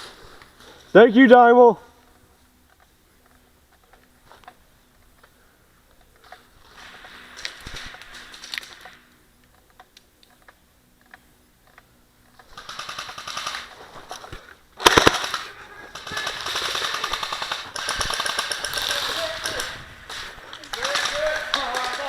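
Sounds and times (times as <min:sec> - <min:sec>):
airsoft guns firing full-auto bursts: 0:06.8 - 0:08.8, 0:12.5 - 0:13.9, 0:14.8 - 0:22.0.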